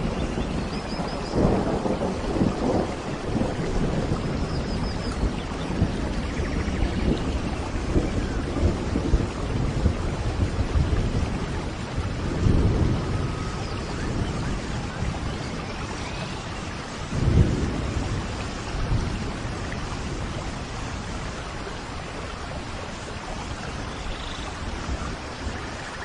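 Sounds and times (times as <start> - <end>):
low roll of thunder: 0.0 - 26.0
steady rain falling: 0.0 - 26.0.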